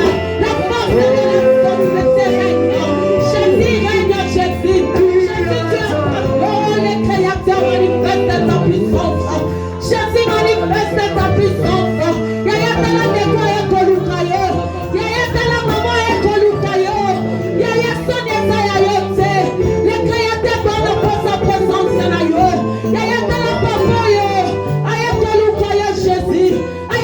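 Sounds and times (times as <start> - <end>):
held low bass notes: 0.0 - 26.6
band playing: 0.0 - 27.0
voices singing worship music: 0.0 - 27.0.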